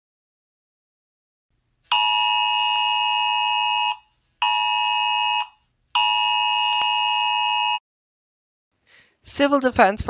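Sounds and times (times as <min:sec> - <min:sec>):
electronic emergency alert tone: 0:01.9 - 0:07.8.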